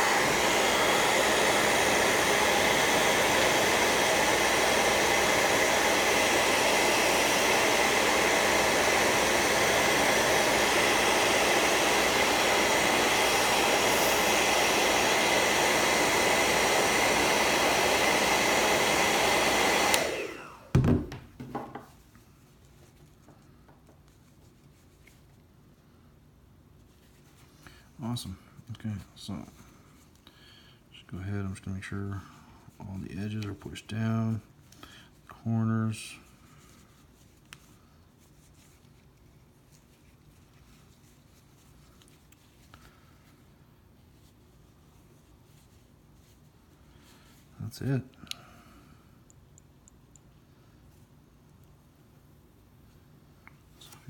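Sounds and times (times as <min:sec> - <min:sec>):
hair dryer running: 0:00.0 - 0:21.8.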